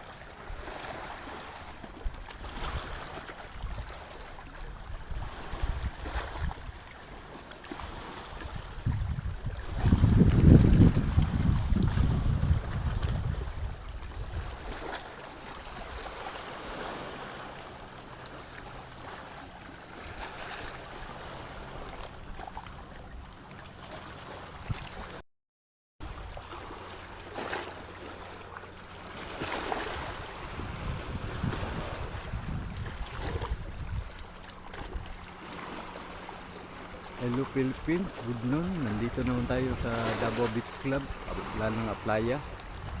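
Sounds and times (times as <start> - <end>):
waves: 0.0 - 25.2, 26.0 - 43.0
wind buffeting microphone: 4.8 - 6.8, 8.4 - 14.8, 29.8 - 35.3, 37.2 - 43.0.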